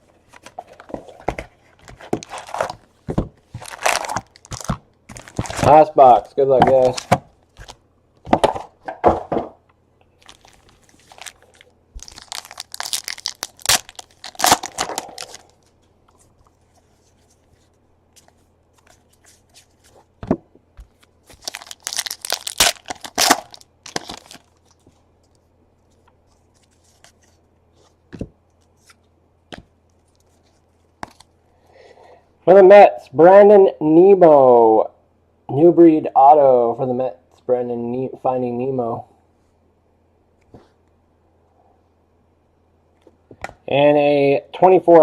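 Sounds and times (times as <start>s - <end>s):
plastic and foil wrapping tearing: 3.6s - 5.8s, 10.2s - 15.6s, 21.3s - 24.8s.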